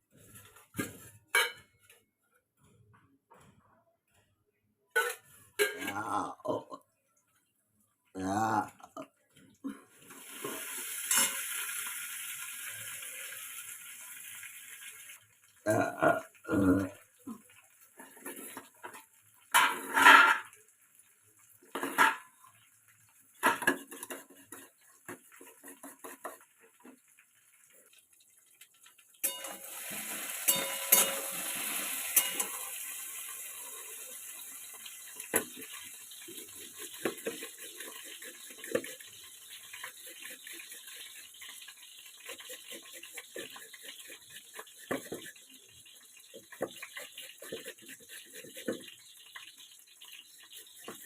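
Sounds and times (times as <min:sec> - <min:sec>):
pots and pans clattering: 0:00.5 - 0:02.0, 0:04.9 - 0:06.2, 0:10.1 - 0:11.5, 0:17.9 - 0:20.6, 0:21.6 - 0:22.6, 0:23.3 - 0:27.0, 0:29.2 - 0:33.3, 0:34.9 - 0:45.4.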